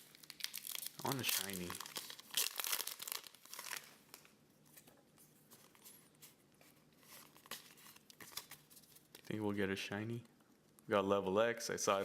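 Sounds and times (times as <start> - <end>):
foil wrapper rustling: 0.0 - 4.2.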